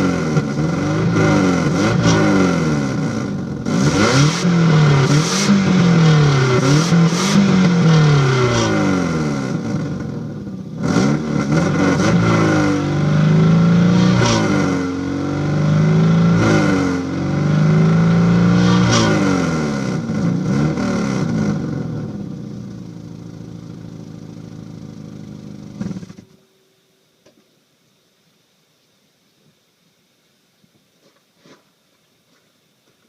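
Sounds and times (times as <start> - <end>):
car engine revving: 0.0 - 26.3.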